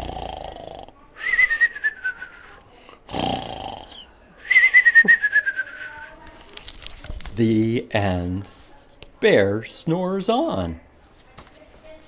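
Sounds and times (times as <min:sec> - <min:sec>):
person imitating cartoon snoring: 0:00.0 - 0:01.0, 0:03.1 - 0:04.1.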